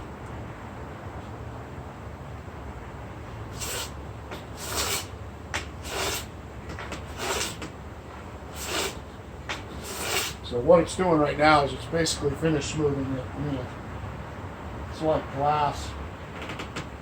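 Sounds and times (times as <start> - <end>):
hand plane shaving wood: 3.6 - 5.1, 5.8 - 6.3, 7.1 - 7.7, 9.8 - 10.4.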